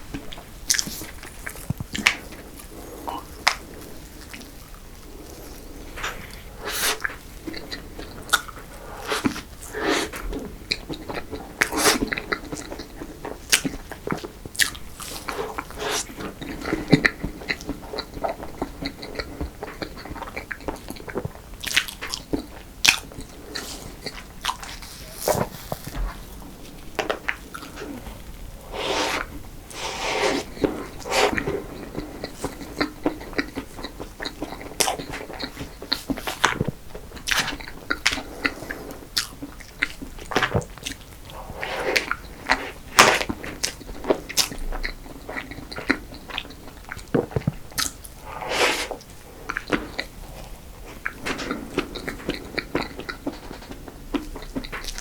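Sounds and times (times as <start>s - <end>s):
chewing with wet smacks: 0.1s - 28.5s, 30.4s - 48.2s, 49.0s - 55.0s
eating crunches: 0.3s - 55.0s.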